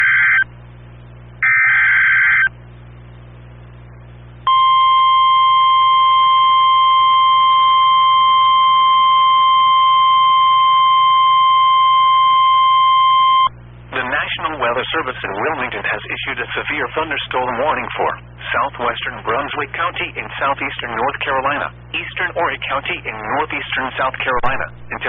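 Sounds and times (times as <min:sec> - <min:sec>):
steady warning alarm tone: 0:00.0 - 0:00.5, 0:01.4 - 0:02.5, 0:04.5 - 0:13.5.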